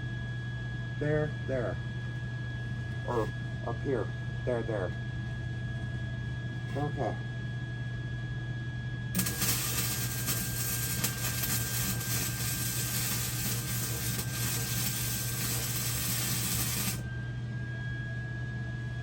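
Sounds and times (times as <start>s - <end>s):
welding arc hissing and crackling: 9.2s - 17.0s.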